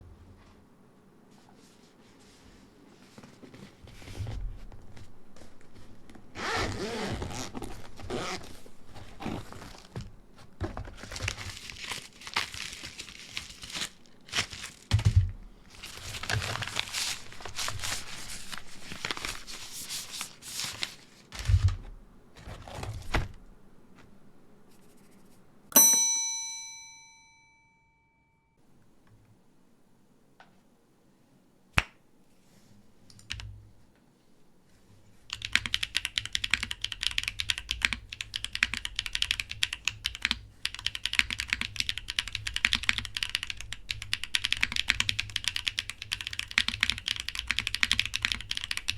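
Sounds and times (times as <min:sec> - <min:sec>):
sharp metallic ding: 0:25.7 - 0:28.4.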